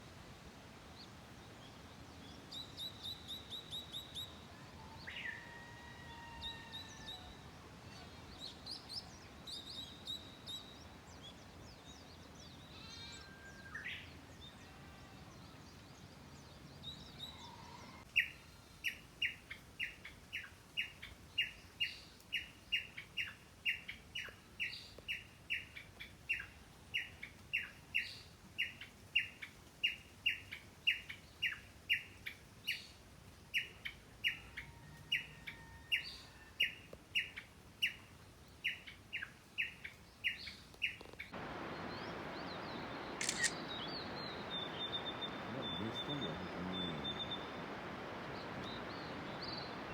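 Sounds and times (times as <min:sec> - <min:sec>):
bird repeating sharp note: 0:43.5 - 0:47.7.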